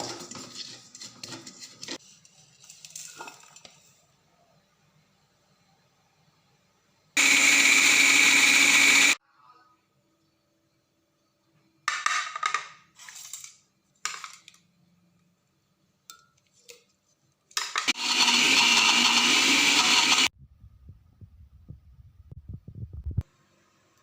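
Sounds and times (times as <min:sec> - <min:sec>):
kitchen blender grinding: 0:07.2 - 0:09.2, 0:17.8 - 0:20.3.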